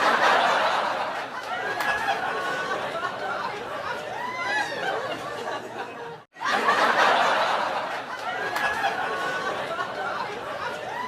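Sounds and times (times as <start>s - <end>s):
people laughing: 0.0s - 11.0s.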